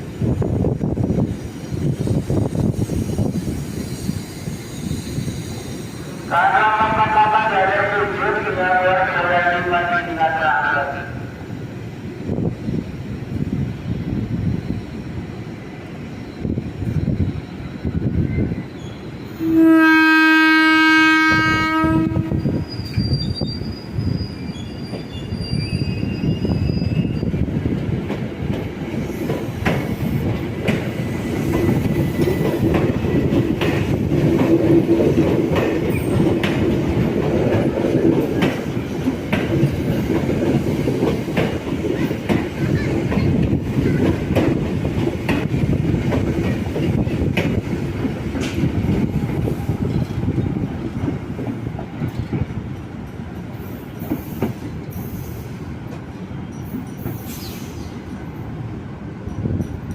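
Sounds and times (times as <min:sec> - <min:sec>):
train rumble: 0:00.0 - 0:59.9
high wheel squeal: 0:01.7 - 0:06.3, 0:22.4 - 0:27.4, 0:56.4 - 0:58.0
train horn blast: 0:19.4 - 0:22.6
wheels clacking over rail joints: 0:28.0 - 0:54.9.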